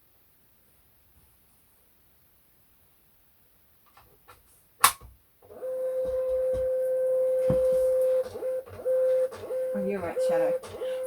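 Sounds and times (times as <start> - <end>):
label printer motor whining: 5.5 - 11.0
soft knocks: 6.0 - 6.8, 7.4 - 9.6.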